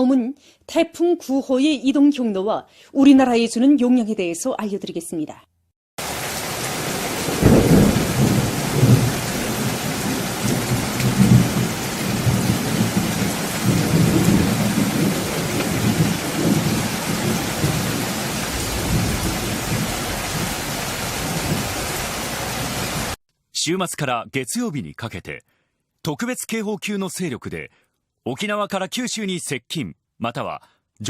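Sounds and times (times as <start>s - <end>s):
heavy rain hissing: 6.0s - 23.2s.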